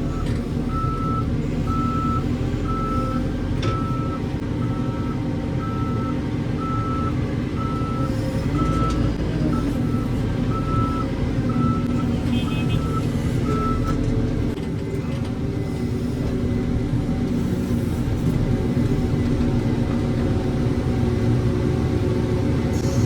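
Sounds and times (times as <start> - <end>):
diesel engine running: 0.0 - 23.0
reversing alarm beeping: 0.1 - 14.0.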